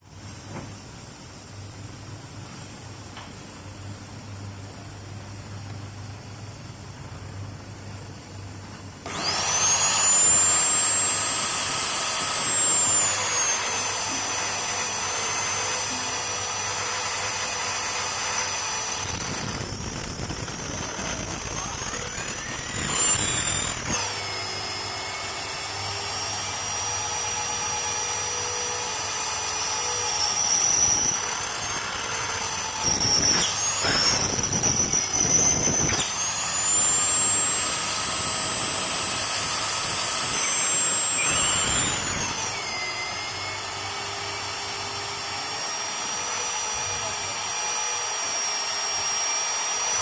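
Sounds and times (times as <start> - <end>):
drill motor whining through steel: 9.0 - 50.0
short rasping bursts: 9.1 - 24.1.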